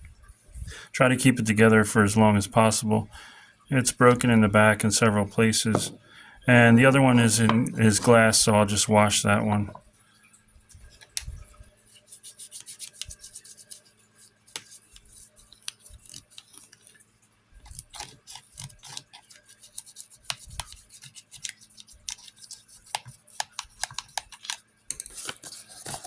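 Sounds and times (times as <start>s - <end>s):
scrubbing plastic lens: 10.7s - 17.0s, 17.6s - 26.0s.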